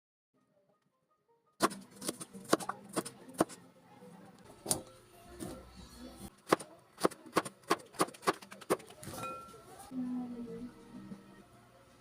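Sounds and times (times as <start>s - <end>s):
background music: 0.4s - 12.0s
knife chopping on cutting board: 1.6s - 3.6s, 6.4s - 8.8s.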